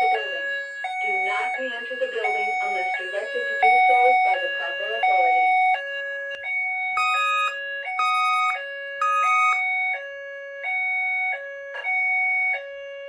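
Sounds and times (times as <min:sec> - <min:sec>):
two-pitch evacuation alert tone: 0:00.0 - 0:09.8.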